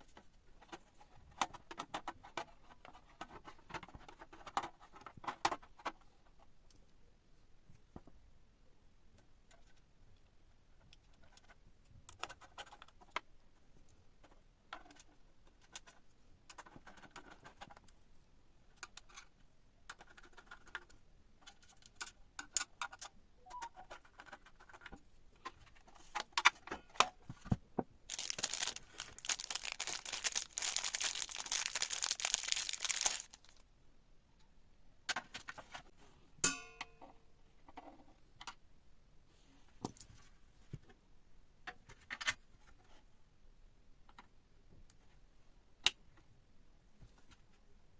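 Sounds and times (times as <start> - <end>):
crinkling rustle: 28.1 - 33.6.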